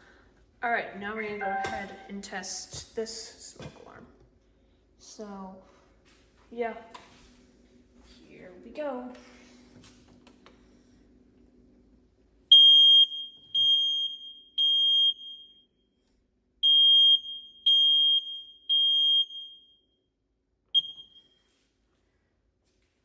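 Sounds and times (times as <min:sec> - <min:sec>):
smoke alarm beeping: 0:12.5 - 0:15.8, 0:16.6 - 0:20.0, 0:20.7 - 0:21.5.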